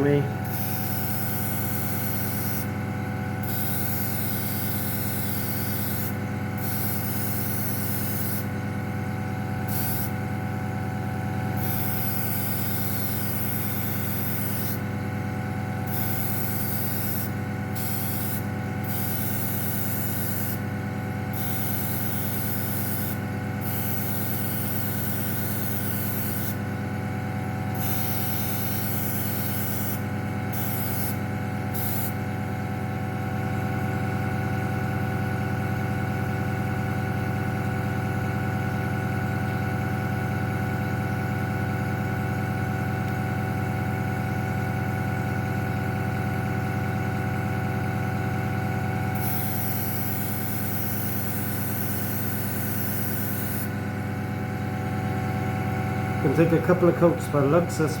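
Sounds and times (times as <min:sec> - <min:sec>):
air compressor humming: 0:00.0 - 0:58.0
airbrush hissing: 0:00.5 - 0:02.8, 0:03.4 - 0:08.5, 0:09.7 - 0:10.2, 0:11.6 - 0:14.8, 0:15.9 - 0:20.6, 0:21.3 - 0:26.6, 0:27.8 - 0:31.2, 0:31.8 - 0:32.2, 0:49.2 - 0:53.8.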